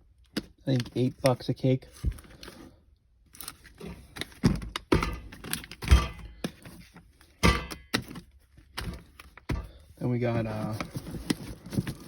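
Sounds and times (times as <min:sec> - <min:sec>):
rustling: 0:09.0 - 0:12.0.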